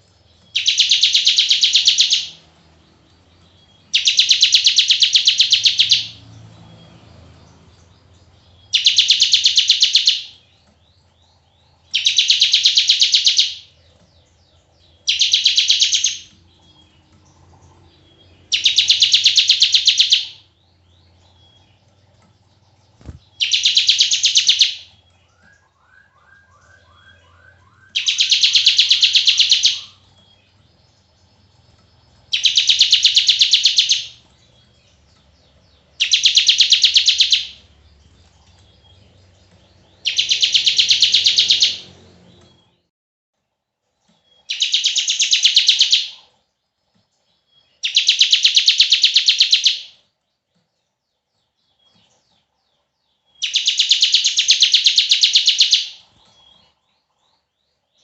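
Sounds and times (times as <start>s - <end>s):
bird buzzy trill: 0.0s - 2.5s, 3.2s - 6.2s, 11.8s - 13.8s, 14.7s - 21.9s, 22.5s - 35.0s, 35.9s - 42.8s.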